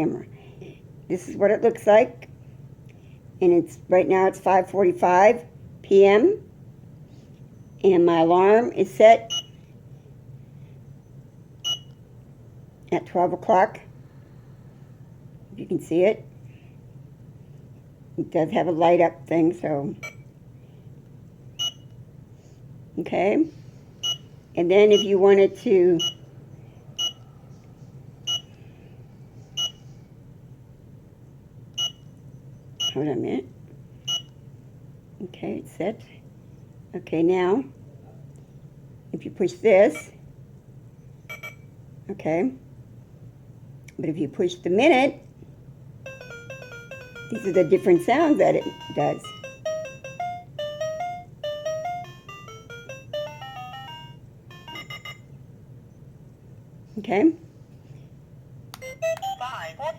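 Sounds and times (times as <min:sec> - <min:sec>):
alarm clock beeping: 0:21.6 - 0:21.8, 0:24.0 - 0:25.4, 0:26.0 - 0:26.2, 0:27.0 - 0:27.2, 0:28.3 - 0:28.5, 0:31.8 - 0:32.0, 0:46.0 - 0:55.4.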